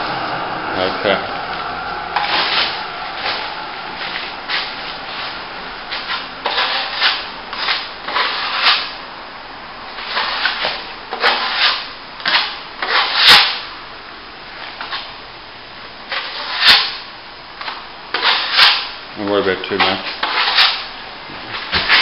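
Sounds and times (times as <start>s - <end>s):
trowel scraping wet plaster: 2.2s - 3.4s, 5.9s - 8.9s, 10.0s - 13.6s, 16.1s - 17.0s, 18.1s - 18.9s, 19.8s - 20.9s.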